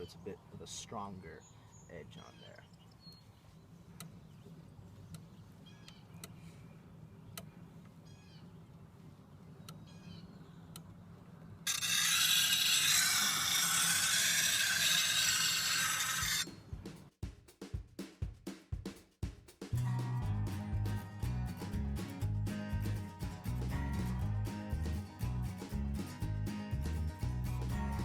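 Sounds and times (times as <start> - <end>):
faint bird chirps: 1.2 - 8.7, 9.4 - 10.8
blade grinding on grindstone: 11.7 - 16.5
drum-backed music: 16.4 - 28.0
low hum: 19.8 - 28.0.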